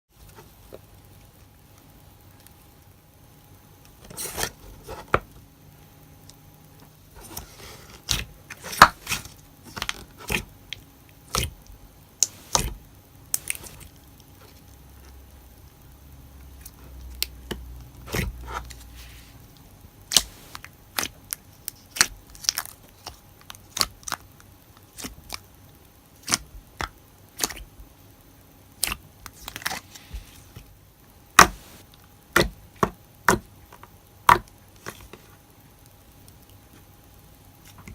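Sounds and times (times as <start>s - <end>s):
slime squishing: 7.1s - 15.2s, 16.6s - 24.2s, 24.8s - 25.4s, 26.2s - 27.7s.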